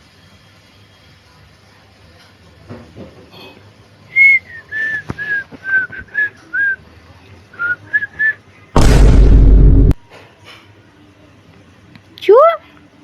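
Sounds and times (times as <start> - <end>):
person whistling a tune: 4.2 - 6.8, 7.6 - 8.4.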